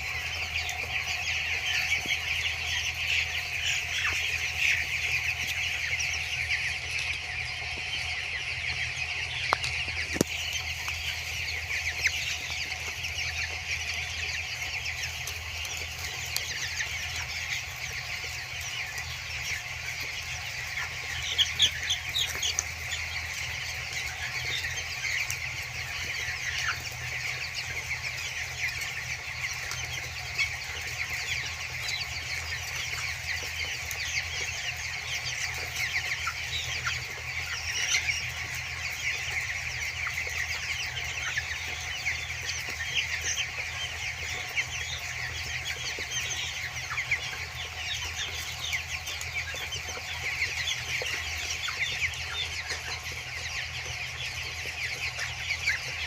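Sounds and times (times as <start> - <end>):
chicks cheeping: 0.0 - 56.0.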